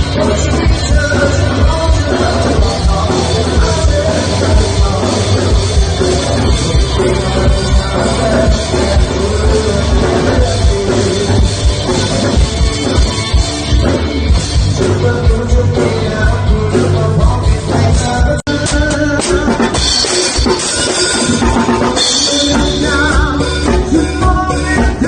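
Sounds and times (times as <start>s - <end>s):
rock song through loudspeakers: 0.0s - 25.0s.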